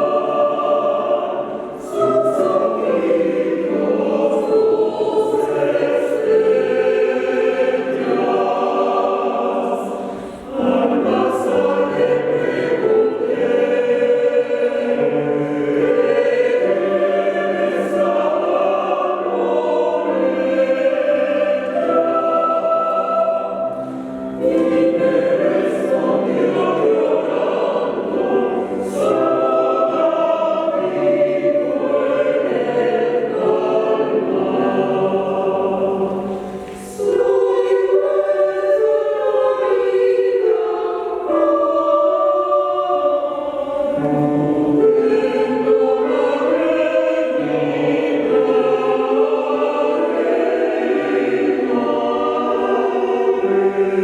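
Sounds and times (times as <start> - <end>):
choir singing: 0.0 - 54.0.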